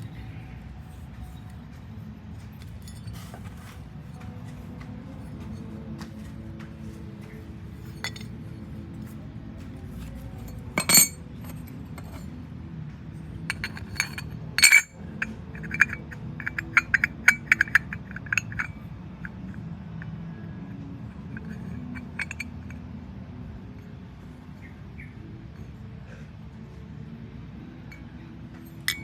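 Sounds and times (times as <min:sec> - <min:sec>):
hard items clinking: 0:02.4 - 0:05.7, 0:06.9 - 0:12.3, 0:13.5 - 0:18.9, 0:28.6 - 0:29.0.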